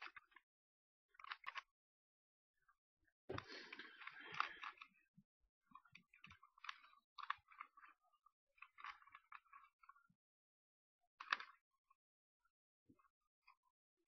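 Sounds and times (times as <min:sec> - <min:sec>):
puzzle cube clicking and rasping: 0:01.1 - 0:01.7, 0:03.3 - 0:04.9, 0:05.7 - 0:08.0, 0:08.6 - 0:10.0, 0:11.2 - 0:11.6.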